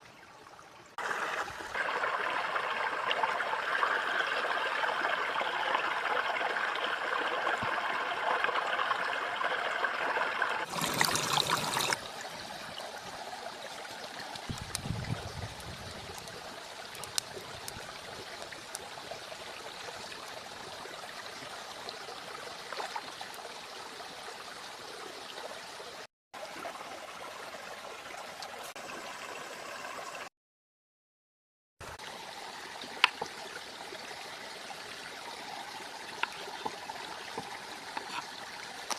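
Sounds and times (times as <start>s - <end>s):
stream of water rushing: 1.0s - 30.2s.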